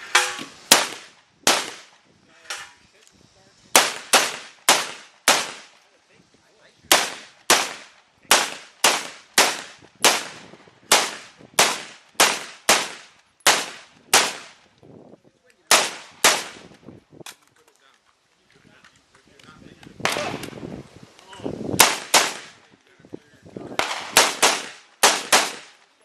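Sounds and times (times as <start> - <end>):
gunshots with echo: 21.8 - 22.6, 23.8 - 25.7.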